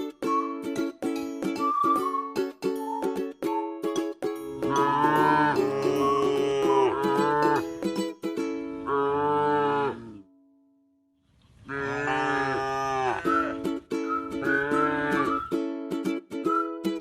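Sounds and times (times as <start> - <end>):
ukulele background music: 0.0 - 8.9, 13.2 - 17.0
cow mooing: 4.6 - 7.6, 8.8 - 10.3, 11.7 - 13.5, 14.5 - 15.2.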